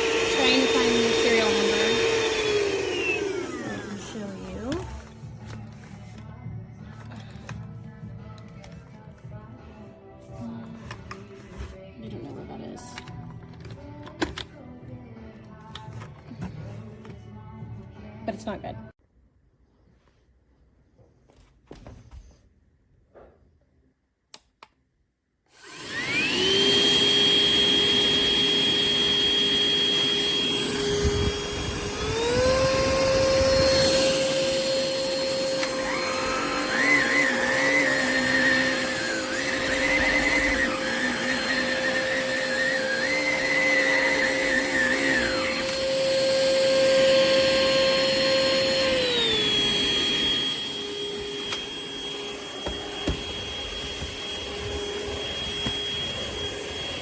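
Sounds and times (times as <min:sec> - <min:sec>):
vacuum cleaner motor whine: 0:00.0 - 0:06.2, 0:25.5 - 0:57.0.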